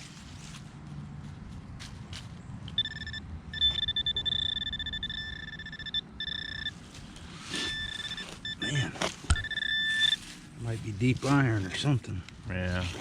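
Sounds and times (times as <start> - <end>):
metal detector beep: 2.8 - 6.8, 7.5 - 10.4.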